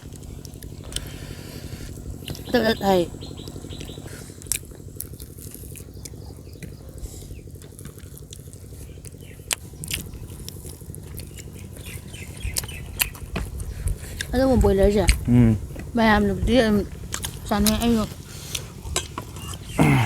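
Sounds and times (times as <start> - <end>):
sharp crunchy clicks: 0.0 - 20.0
steady low hum: 0.0 - 20.0
person biting and chewing food: 4.3 - 6.7, 7.7 - 11.8.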